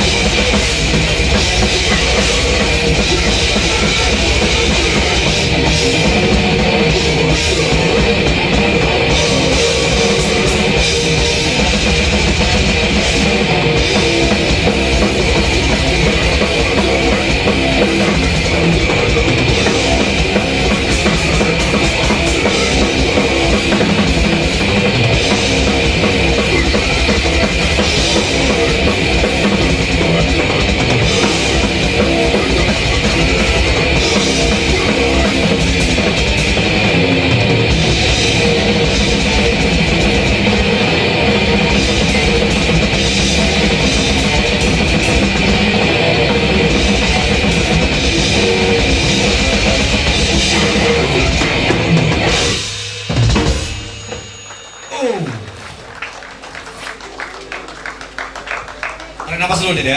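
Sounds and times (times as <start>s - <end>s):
heavy metal music: 0.0s - 55.5s
fast drum kit: 0.0s - 59.9s.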